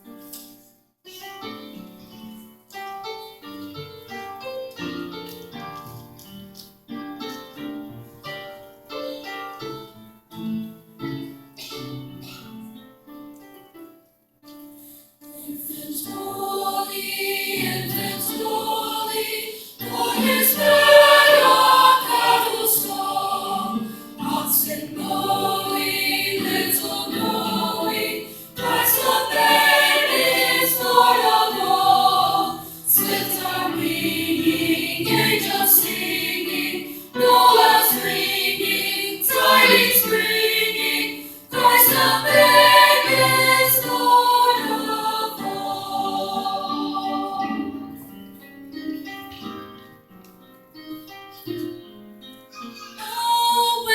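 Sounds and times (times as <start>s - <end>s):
school chorus singing: 15.2s - 48.2s, 52.5s - 53.9s.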